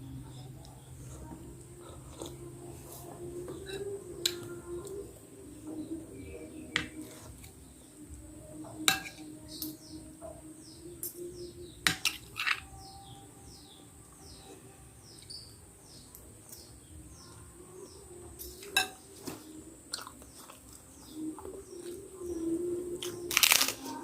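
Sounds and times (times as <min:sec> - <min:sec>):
birds chirping: 0:00.0 - 0:24.0
cutlery clinking against a bowl: 0:08.8 - 0:09.2, 0:11.9 - 0:12.7, 0:18.4 - 0:20.1.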